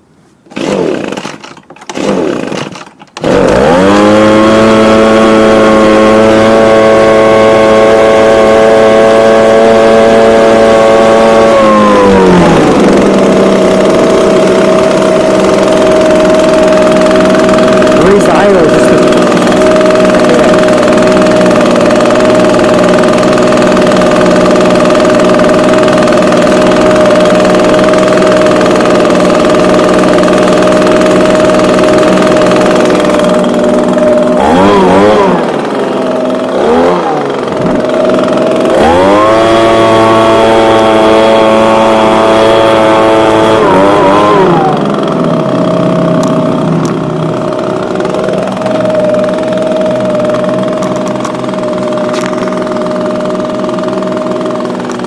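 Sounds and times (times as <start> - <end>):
leaf blower engine revving: 0.4 - 55.0.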